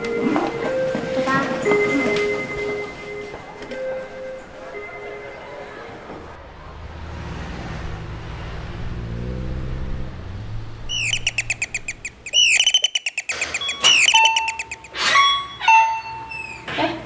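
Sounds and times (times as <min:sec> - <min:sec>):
songbird chirping: 0:09.6 - 0:15.0.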